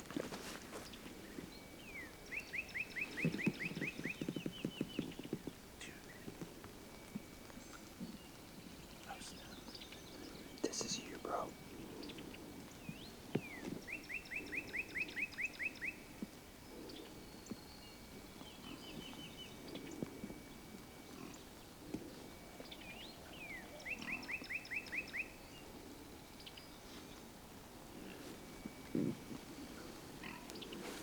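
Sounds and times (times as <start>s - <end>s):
soft low rustling: 0.0s - 14.6s, 25.6s - 31.0s
songbird singing: 0.1s - 31.0s.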